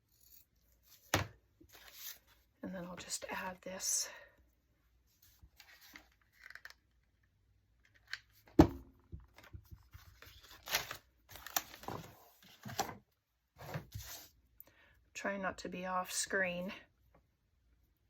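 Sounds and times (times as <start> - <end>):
paper rustling and scraping: 0.0 - 2.4, 13.6 - 14.4.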